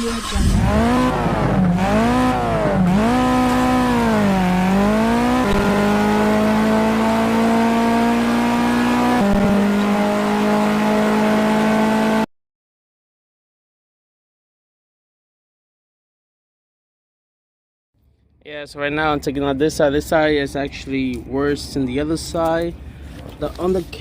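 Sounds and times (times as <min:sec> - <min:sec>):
car engine revving: 0:00.0 - 0:12.3.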